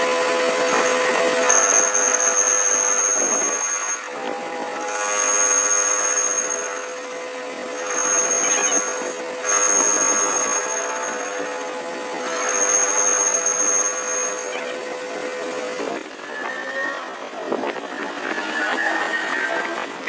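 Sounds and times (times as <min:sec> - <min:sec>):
high-pitched whine of metal cutting: 0:00.0 - 0:20.0
machine tool humming: 0:00.0 - 0:20.0.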